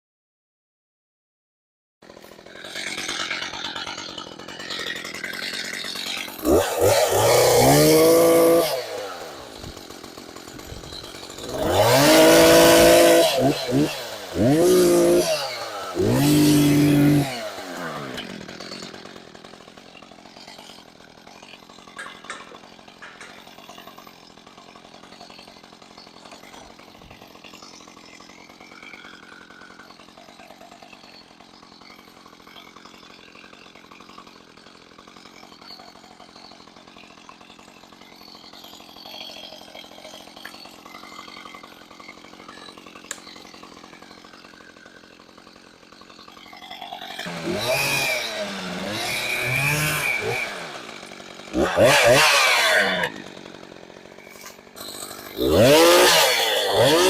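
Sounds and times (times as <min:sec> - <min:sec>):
chainsaw engine running: 0:02.0 - 0:57.0
chainsaw revving loudly: 0:02.1 - 0:23.2, 0:24.3 - 0:30.2, 0:30.8 - 0:57.0.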